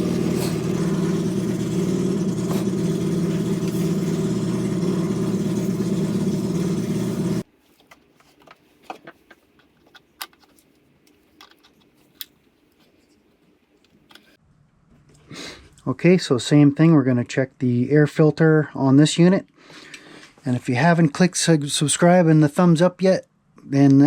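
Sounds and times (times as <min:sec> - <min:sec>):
generator engine running: 0:00.0 - 0:07.4.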